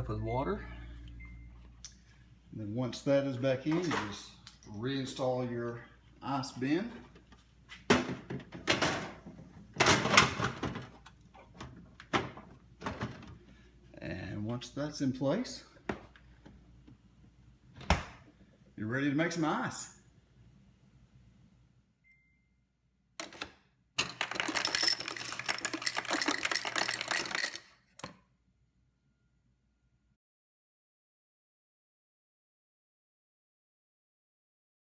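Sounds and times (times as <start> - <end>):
low motor hum: 0.0 - 1.8
ice cubes clattering: 24.0 - 27.8.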